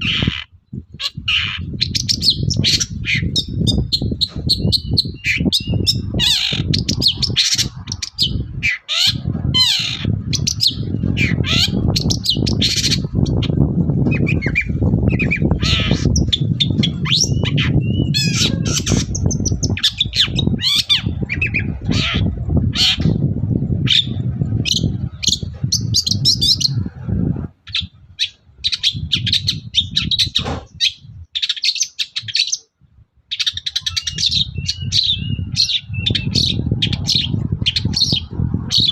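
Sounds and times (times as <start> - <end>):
bird singing harsh squawks: 0.0 - 32.7, 33.3 - 38.9.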